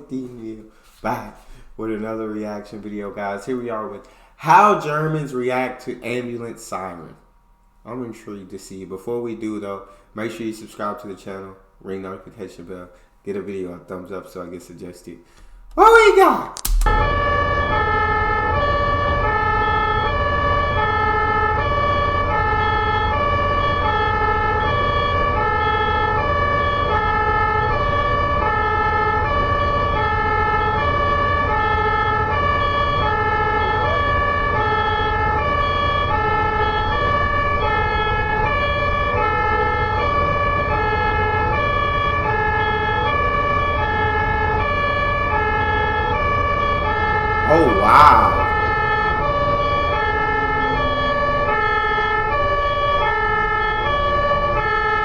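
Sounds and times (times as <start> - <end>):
two-tone ambulance siren: 17.0 - 47.2, 48.9 - 55.0.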